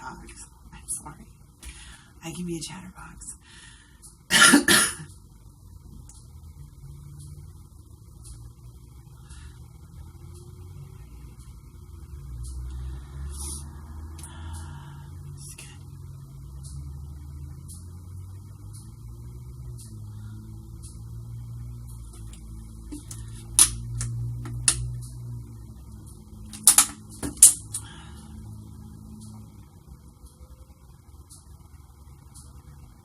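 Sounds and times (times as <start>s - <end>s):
low steady hum: 0.0s - 33.0s
sharp clicks or crackles: 26.5s - 27.8s.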